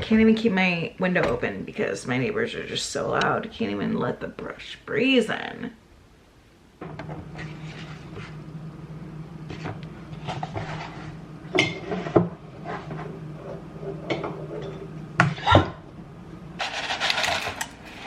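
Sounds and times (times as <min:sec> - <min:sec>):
steady low hum: 0:05.8 - 0:18.0
household items clattering: 0:16.6 - 0:18.0
items clicking and knocking: 0:16.6 - 0:18.0.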